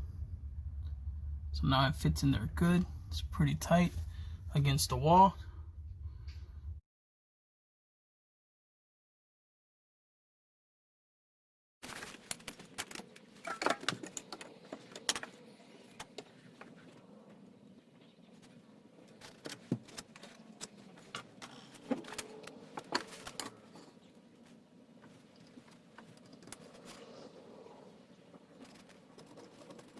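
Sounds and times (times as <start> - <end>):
tools clicking and knocking: 12.3 - 16.8.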